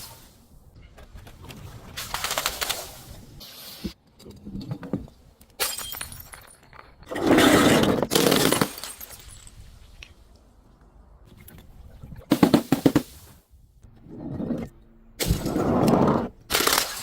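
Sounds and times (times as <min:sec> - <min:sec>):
glass bottle breaking: 0:05.6 - 0:06.9, 0:08.1 - 0:09.6.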